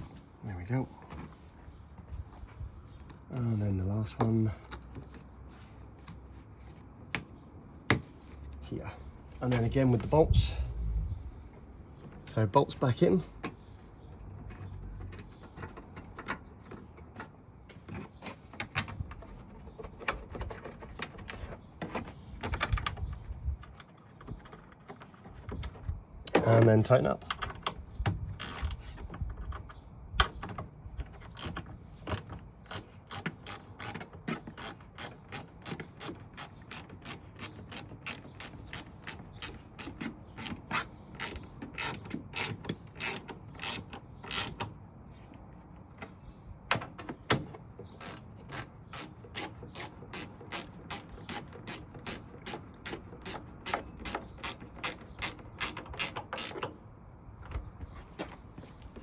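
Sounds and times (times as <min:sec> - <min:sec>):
ratchet spanner clicking: 0:28.4 - 0:28.8, 0:31.4 - 0:44.6, 0:48.0 - 0:56.7.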